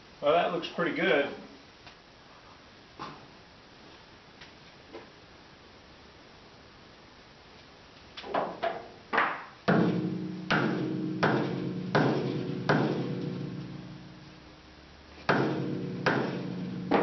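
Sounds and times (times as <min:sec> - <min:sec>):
hammer striking ringing steel: 0:09.7 - 0:14.4, 0:15.3 - 0:17.0.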